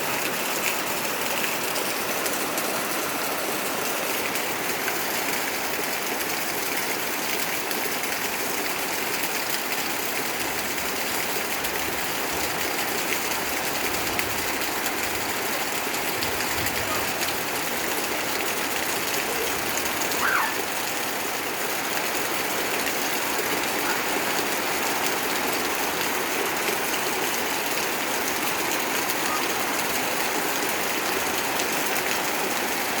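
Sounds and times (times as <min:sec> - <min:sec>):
steady rain falling: 0:00.0 - 0:33.0.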